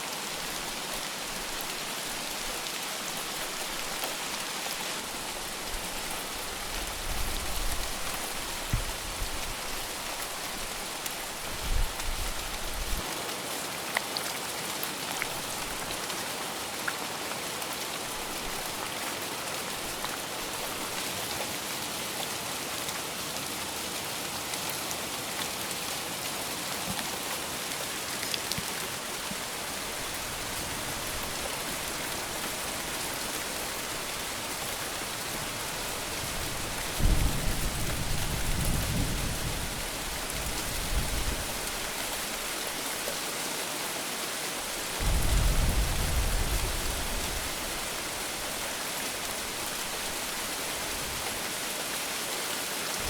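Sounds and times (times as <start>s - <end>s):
heavy rain falling: 0.0s - 53.0s
thunder rumbling: 45.0s - 47.8s.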